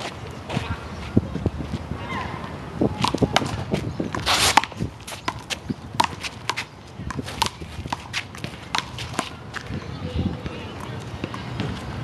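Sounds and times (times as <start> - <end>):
sneaker footsteps: 0.0 - 2.0, 3.0 - 12.0
short scraping rush: 4.2 - 5.2.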